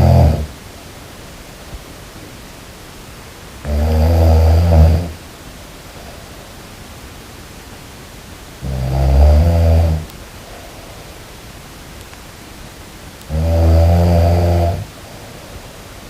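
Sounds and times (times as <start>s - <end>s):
person snoring: 0.0s - 0.6s, 3.6s - 5.2s, 8.6s - 11.0s, 13.3s - 14.9s
steady hiss: 0.0s - 16.0s.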